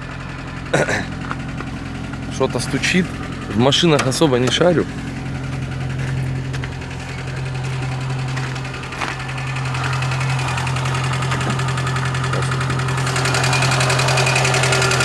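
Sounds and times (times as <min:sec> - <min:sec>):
car engine idling: 0:00.0 - 0:15.0
fast steady engine knocking: 0:00.0 - 0:15.0.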